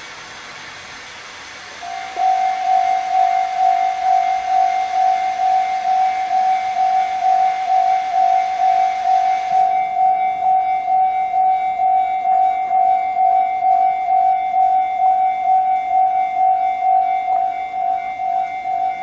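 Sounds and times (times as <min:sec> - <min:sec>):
steady hiss: 0:00.0 - 0:09.7
electronic bell tone repeating: 0:02.0 - 0:19.0.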